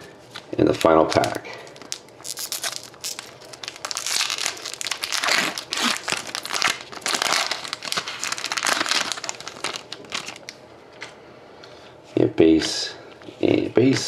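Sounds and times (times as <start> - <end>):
wrapper tearing and crinkling: 0.6 - 10.6.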